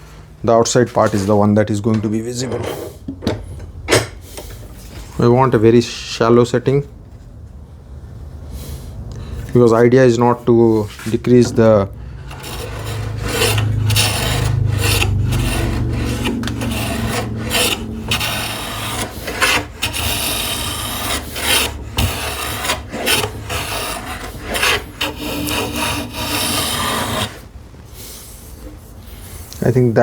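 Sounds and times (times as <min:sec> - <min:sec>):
hand plane shaving wood: 0:10.7 - 0:27.5.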